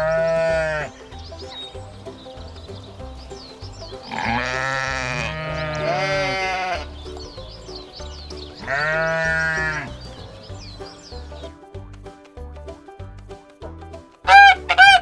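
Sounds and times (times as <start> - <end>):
sheep bleating: 0.0 - 1.0, 4.0 - 6.9, 8.6 - 9.9.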